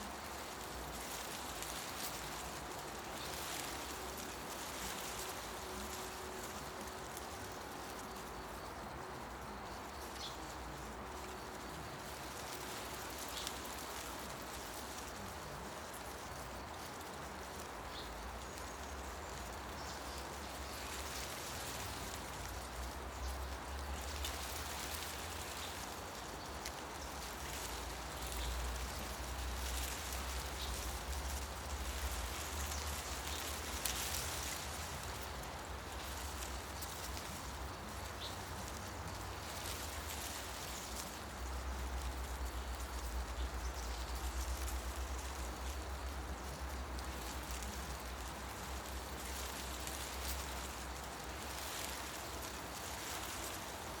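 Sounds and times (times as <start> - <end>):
leaves rustling in wind: 0.0 - 54.0.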